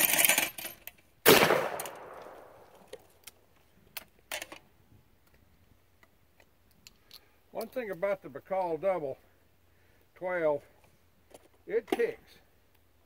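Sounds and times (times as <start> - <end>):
shotgun shot: 1.2 - 2.7.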